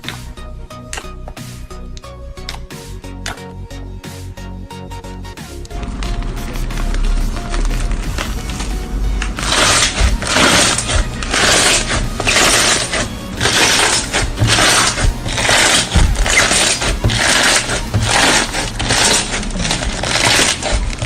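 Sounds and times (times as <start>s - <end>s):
slime crackling and popping: 5.7s - 21.0s.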